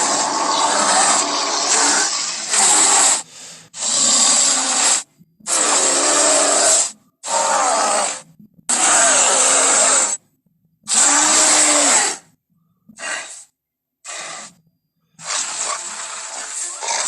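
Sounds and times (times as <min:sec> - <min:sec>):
gorilla growling: 0:00.0 - 0:10.2, 0:10.9 - 0:12.2, 0:15.2 - 0:17.0.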